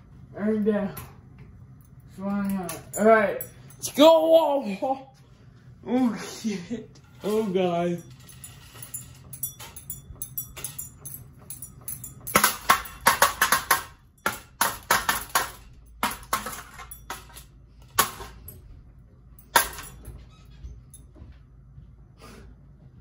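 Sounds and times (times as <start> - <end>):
metal fan parts clattering: 1.8 - 4.4, 6.9 - 18.7, 19.4 - 21.0.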